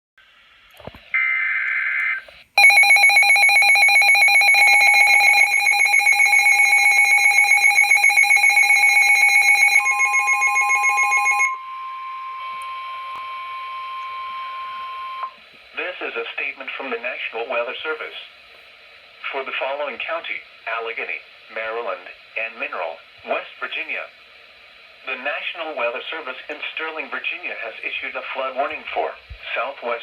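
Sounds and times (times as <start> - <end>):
digital header tones: 1.2 - 11.6
pulsing two-tone attention signal: 2.6 - 15.3.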